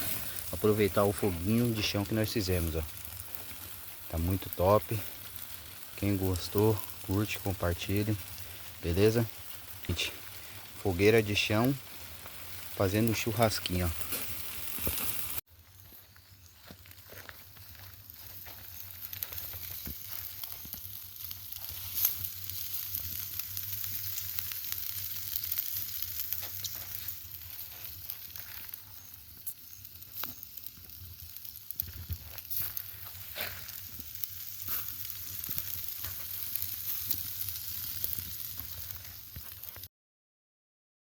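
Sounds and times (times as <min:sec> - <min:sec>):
crackling pops: 0:00.0 - 0:15.4, 0:17.6 - 0:39.9
meat sizzling on charcoal grill: 0:00.0 - 0:39.9.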